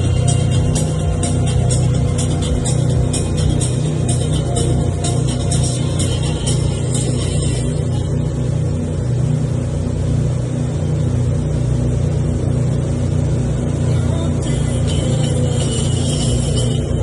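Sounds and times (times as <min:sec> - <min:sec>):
boat engine humming: 0:00.0 - 0:17.0.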